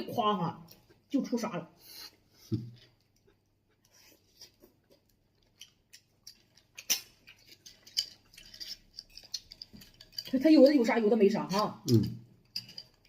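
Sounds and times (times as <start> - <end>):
chopsticks and shells clicking: 5.5 - 13.0.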